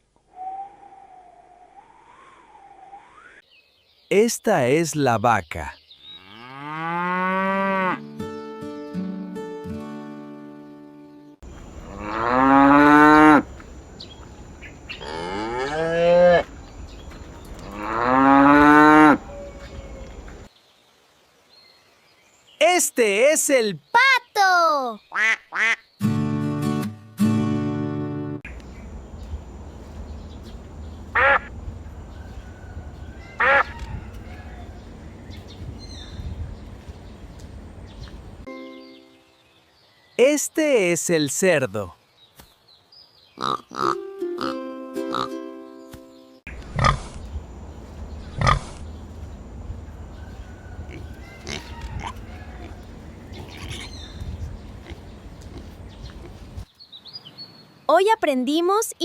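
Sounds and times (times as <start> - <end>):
cow mooing: 6.2 - 8.0, 11.8 - 13.5, 15.0 - 16.5, 17.6 - 19.6, 33.4 - 33.8, 50.8 - 54.0
duck quacking: 25.1 - 25.8, 31.1 - 31.5, 33.4 - 33.8
low outdoor rumble: 28.5 - 38.5, 46.5 - 56.6.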